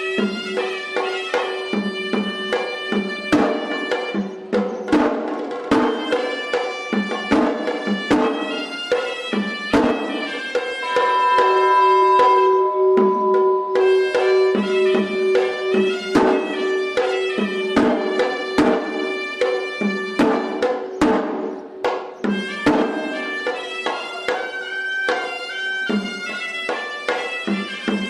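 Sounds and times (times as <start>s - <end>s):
reedy double-reed pipe melody: 5.8s - 21.0s, 22.3s - 28.0s.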